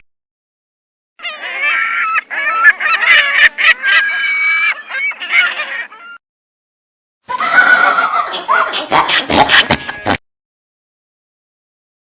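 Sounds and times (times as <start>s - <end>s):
bird calling: 1.2s - 6.2s.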